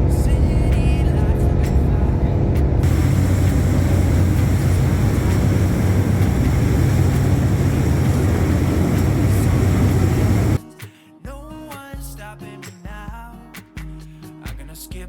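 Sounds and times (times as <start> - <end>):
engine drone: 0.0 - 10.6
rushing noise: 2.8 - 10.6.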